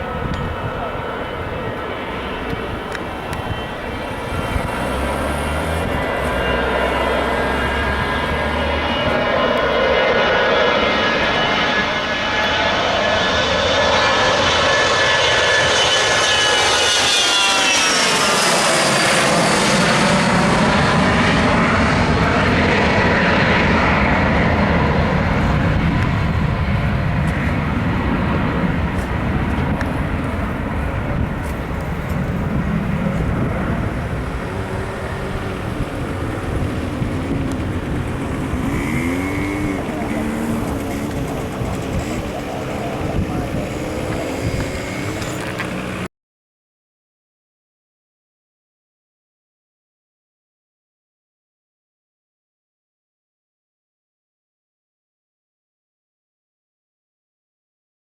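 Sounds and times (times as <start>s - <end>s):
jet engines passing: 0.0s - 46.1s.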